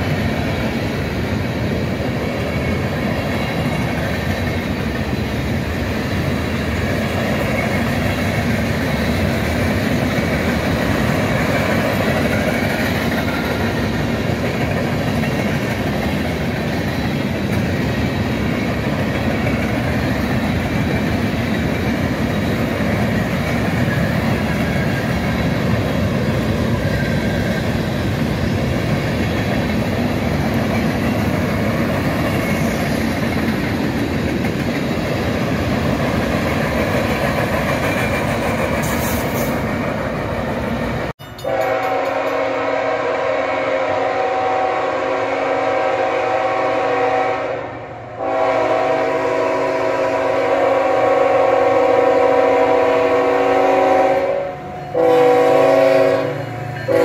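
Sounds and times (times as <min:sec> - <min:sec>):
train wheels rumbling on rails: 0:00.0 - 0:57.0
train horn chord: 0:41.4 - 0:57.0.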